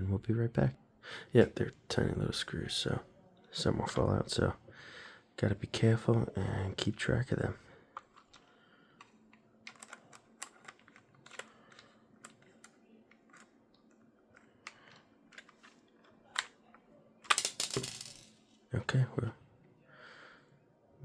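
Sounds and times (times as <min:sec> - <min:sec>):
tiny screws clattering: 0:17.3 - 0:18.4.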